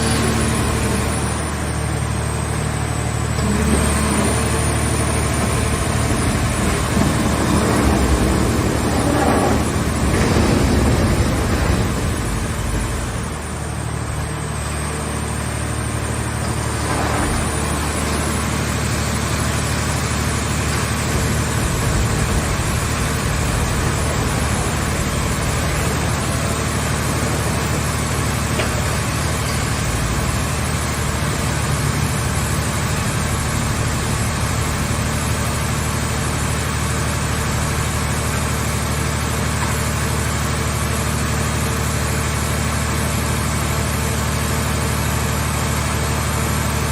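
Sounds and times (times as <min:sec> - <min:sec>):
baler engine droning: 0:00.0 - 0:36.5.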